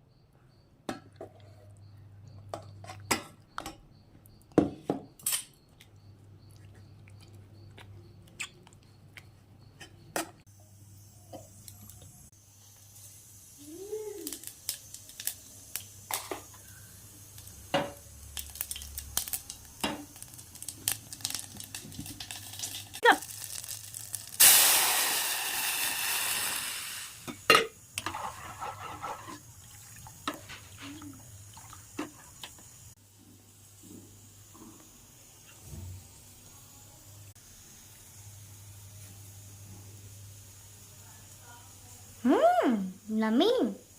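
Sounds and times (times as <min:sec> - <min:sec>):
utensils and cookware clinking: 0:04.8 - 0:05.6, 0:27.3 - 0:32.6.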